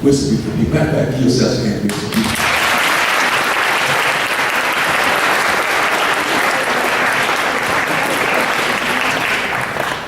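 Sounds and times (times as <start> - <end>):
audience applauding: 2.1 - 10.0.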